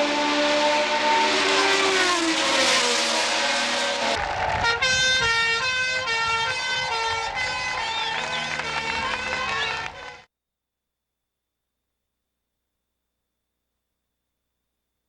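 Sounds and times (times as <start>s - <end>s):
racing car engine passing: 0.0s - 10.2s
two-tone siren: 3.6s - 10.2s.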